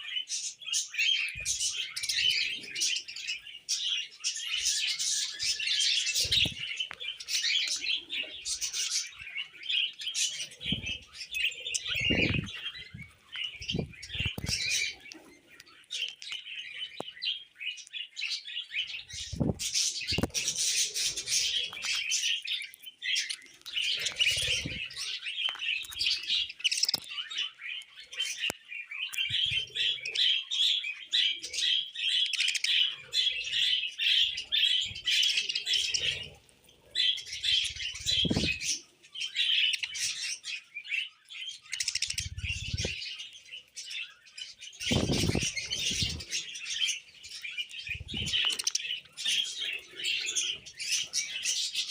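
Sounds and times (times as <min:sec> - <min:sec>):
budgerigars chattering: 0:00.0 - 0:51.9.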